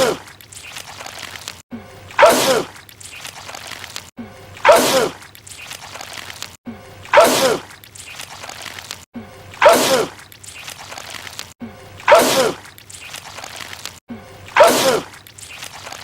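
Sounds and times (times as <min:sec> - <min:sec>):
man sneezing loudly: 0:12.1 - 0:12.6, 0:14.6 - 0:15.1.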